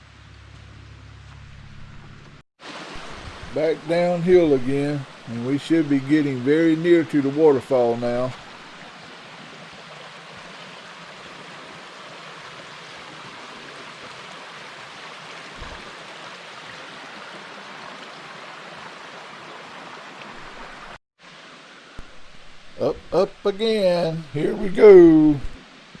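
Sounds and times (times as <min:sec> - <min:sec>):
stream and waterfall rushing: 0:02.6 - 0:26.0.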